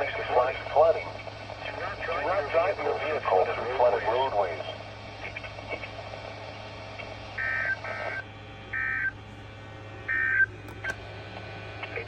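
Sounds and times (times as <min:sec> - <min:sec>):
low hum and hiss: 0:00.0 - 0:12.0.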